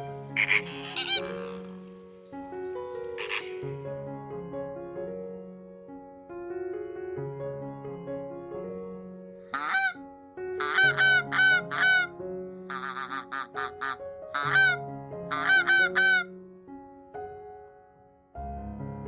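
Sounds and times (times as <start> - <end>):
waterfowl honking: 0.0 - 1.8, 3.0 - 3.7, 9.5 - 10.0, 10.6 - 12.1, 12.7 - 16.3
soft piano music: 0.0 - 19.0.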